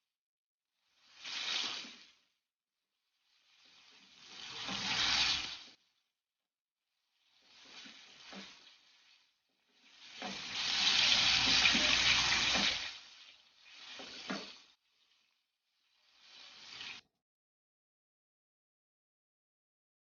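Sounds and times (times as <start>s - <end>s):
fish frying in hot oil: 0.8s - 2.4s, 3.1s - 6.0s, 7.0s - 17.1s.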